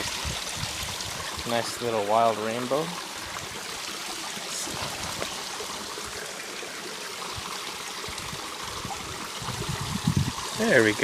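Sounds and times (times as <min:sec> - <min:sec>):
creek water flowing: 0:00.0 - 0:11.0.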